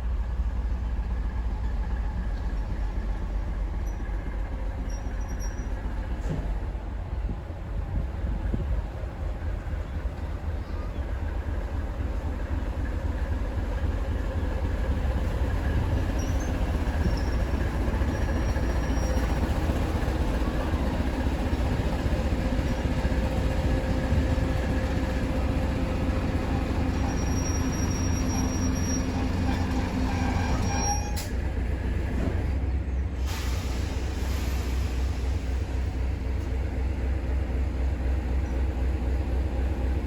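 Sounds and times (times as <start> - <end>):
train wheels rumbling on rails: 0.0 - 40.0
high-pitched wheel squeals: 4.9 - 5.8, 16.1 - 19.4, 26.8 - 31.4.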